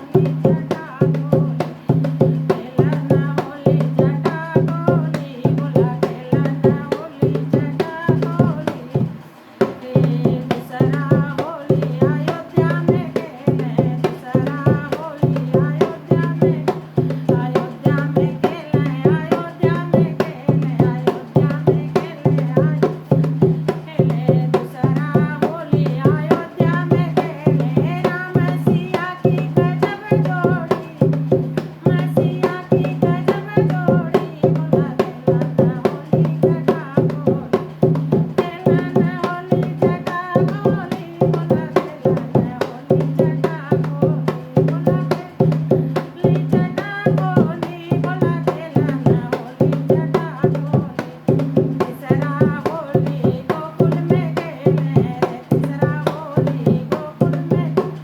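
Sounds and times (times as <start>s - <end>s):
fast steady drum beat: 0.0s - 58.0s
person singing devotional song: 0.0s - 58.0s.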